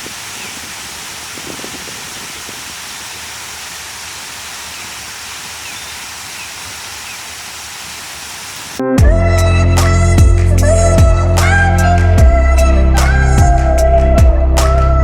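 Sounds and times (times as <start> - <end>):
waterfall rushing: 0.0 - 8.8.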